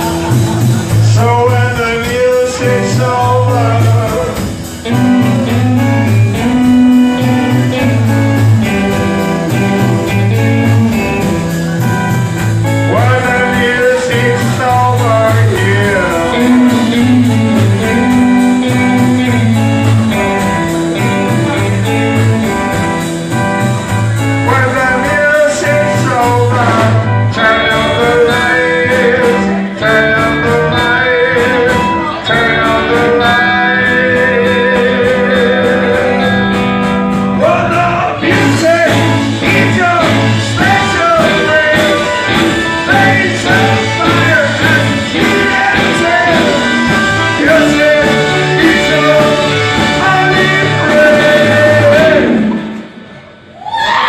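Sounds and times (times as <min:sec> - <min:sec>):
live rock band music: 0:00.0 - 0:54.0.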